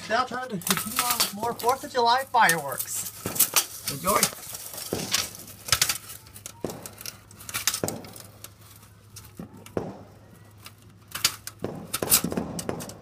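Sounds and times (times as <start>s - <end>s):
fireworks bangs with echo: 3.2s - 4.2s, 4.8s - 5.5s, 6.6s - 7.1s, 7.7s - 8.4s, 9.4s - 10.5s, 11.6s - 13.0s.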